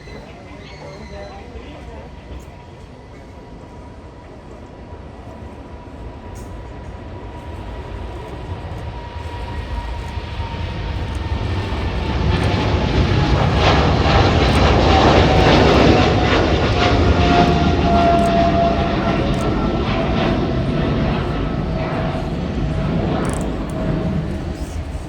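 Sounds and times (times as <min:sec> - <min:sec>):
jet airliner passing close: 0:00.0 - 0:25.0
jet engine whine dropping in pitch: 0:00.0 - 0:25.0
rough rushing jet noise: 0:08.0 - 0:25.0.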